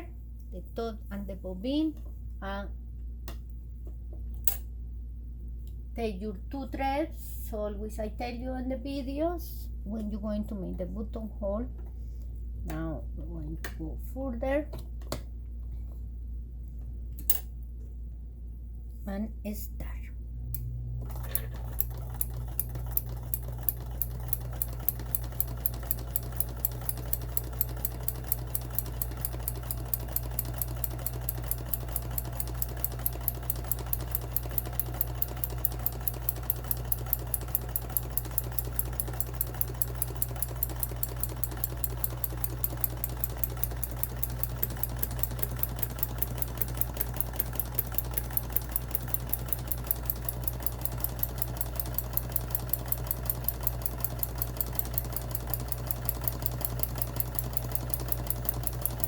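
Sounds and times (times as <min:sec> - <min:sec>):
sewing machine running: 0:21.0 - 0:59.0.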